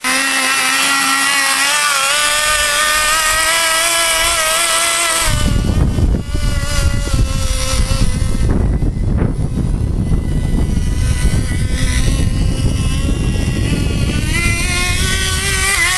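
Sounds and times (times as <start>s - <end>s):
small glow engine running: 0.0s - 15.9s
low rough rumble: 5.2s - 15.9s.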